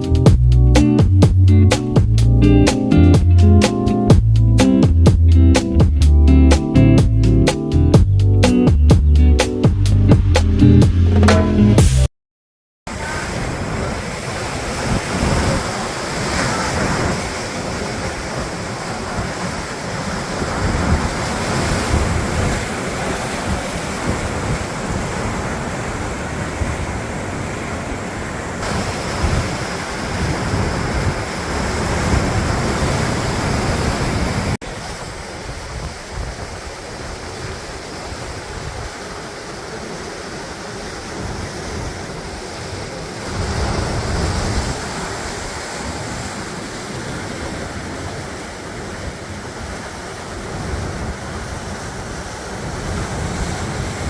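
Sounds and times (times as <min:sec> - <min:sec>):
waves breaking on a beach: 0:12.9 - 0:54.0
wind buffeting microphone: 0:13.0 - 0:27.6, 0:28.6 - 0:34.6, 0:41.1 - 0:54.0.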